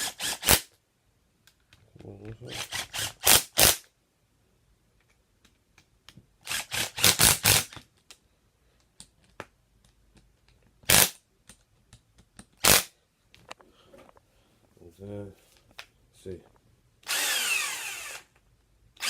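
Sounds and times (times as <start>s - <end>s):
power tool bursts: 17.0s - 18.3s.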